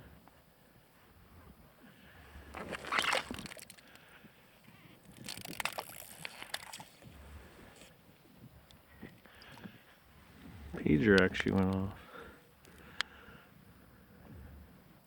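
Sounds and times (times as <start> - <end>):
water sloshing and splashing: 2.5 - 4.1, 5.1 - 7.2.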